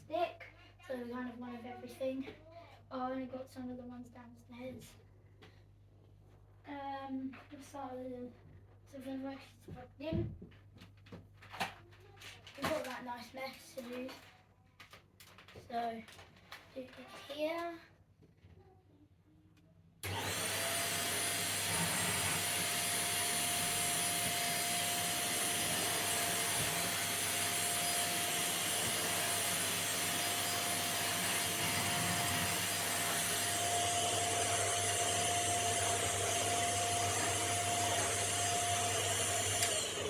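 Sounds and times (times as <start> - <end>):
vacuum cleaner whining: 20.0 - 40.0.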